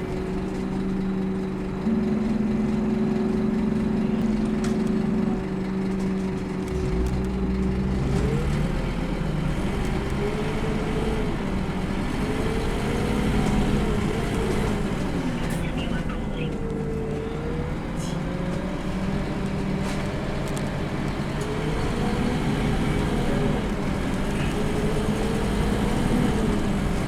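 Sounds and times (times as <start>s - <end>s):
transmission whine: 0.0s - 18.0s
bus diesel engine rumble: 0.0s - 27.0s.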